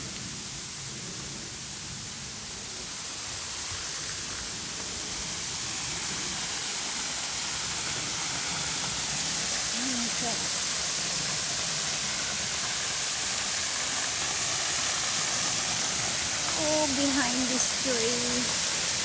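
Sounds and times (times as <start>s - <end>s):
waterfall rushing: 5.2s - 19.0s.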